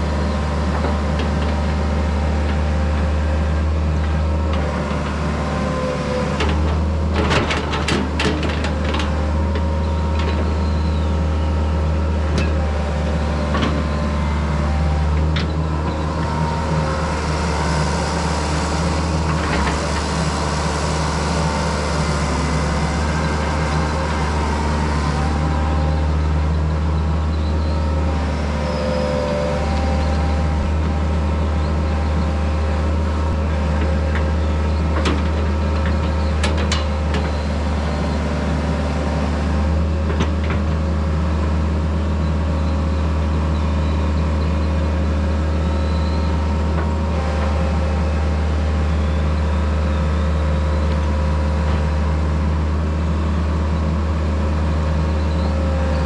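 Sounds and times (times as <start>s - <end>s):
heavy machine engine running: 0.0s - 56.0s.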